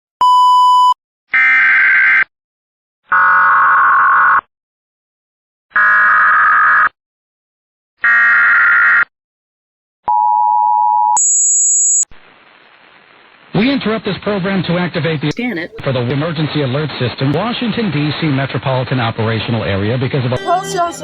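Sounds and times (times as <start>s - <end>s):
digital data bursts: 20.4s - 21.0s
two-tone attention signal: 20.4s - 21.0s.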